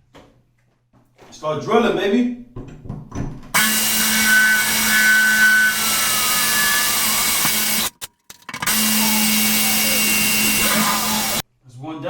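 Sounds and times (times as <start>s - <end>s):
drill bit squealing: 3.6s - 8.0s, 8.6s - 11.4s
power drill grinding through tile: 3.6s - 8.0s, 8.6s - 11.4s.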